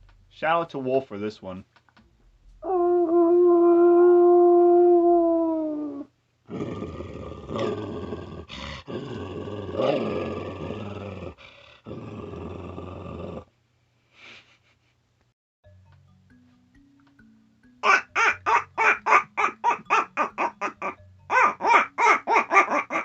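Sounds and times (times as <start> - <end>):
person howling like a dog: 2.6 - 13.4
person growling: 2.6 - 13.5.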